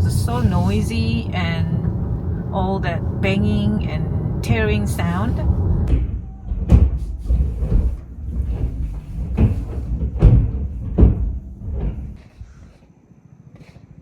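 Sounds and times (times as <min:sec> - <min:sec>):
low rumble: 0:00.0 - 0:06.2.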